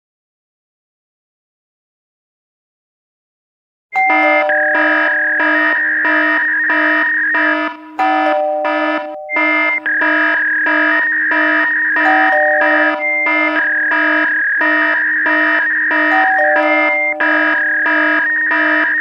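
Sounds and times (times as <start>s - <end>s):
distorted electronic tones pulsing: 4.0s - 19.0s
steady low tone: 4.0s - 19.0s.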